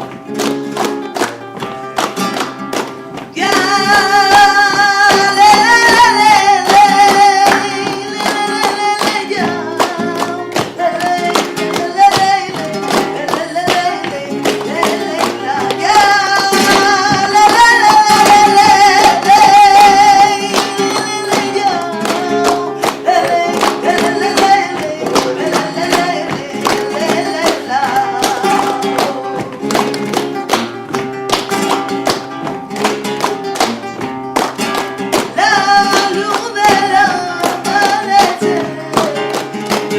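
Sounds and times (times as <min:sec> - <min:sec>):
acoustic guitar: 0:00.0 - 0:39.9
hand clapping rhythm: 0:00.0 - 0:39.9
person singing ornamented lines: 0:03.3 - 0:29.8.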